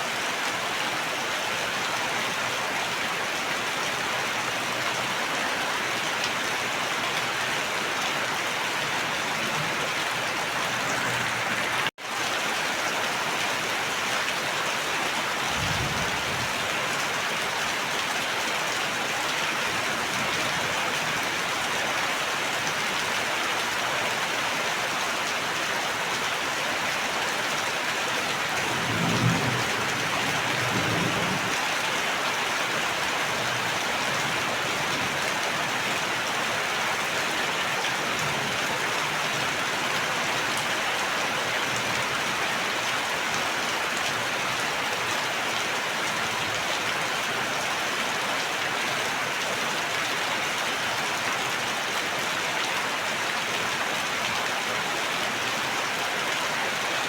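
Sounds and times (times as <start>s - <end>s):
heavy rain falling: 0.1s - 57.0s
low rumbles of thunder: 15.4s - 16.7s.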